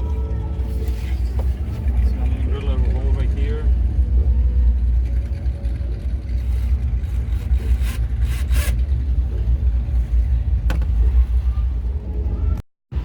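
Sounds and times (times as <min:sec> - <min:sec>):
heavy low rumble: 0:00.0 - 0:13.0
power drill boring: 0:06.4 - 0:08.9.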